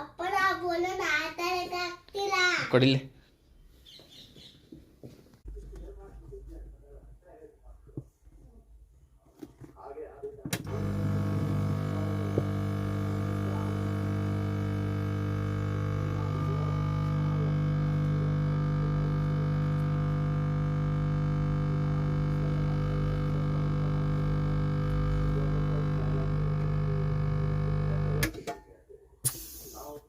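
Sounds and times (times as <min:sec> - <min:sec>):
air compressor humming: 0:10.5 - 0:28.4.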